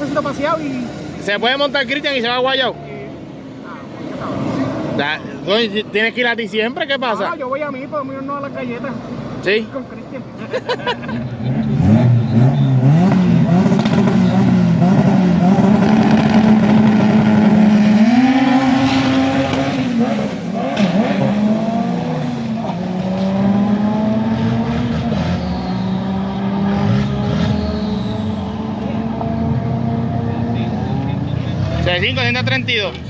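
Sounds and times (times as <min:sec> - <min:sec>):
race car engine revving: 0:11.0 - 0:32.9
faint engines rising in pitch: 0:20.8 - 0:32.4.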